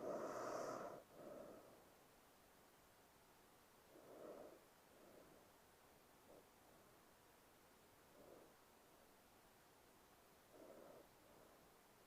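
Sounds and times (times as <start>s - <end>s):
woman breathing softly: 0.0s - 2.0s, 3.8s - 7.0s, 8.0s - 8.7s, 10.4s - 11.8s
low steady hiss: 0.0s - 12.0s.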